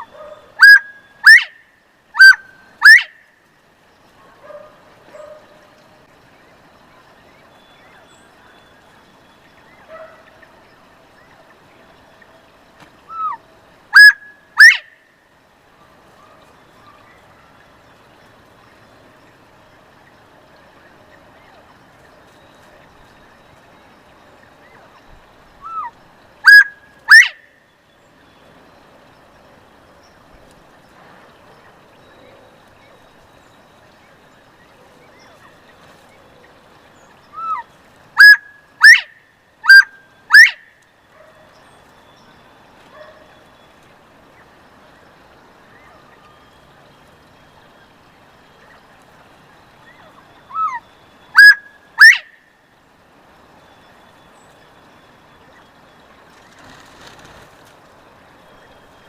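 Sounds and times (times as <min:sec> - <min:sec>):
quail whistled call: 0:00.0 - 0:01.6, 0:02.2 - 0:03.2, 0:13.1 - 0:15.0, 0:25.0 - 0:27.6, 0:37.3 - 0:40.7, 0:49.8 - 0:52.4.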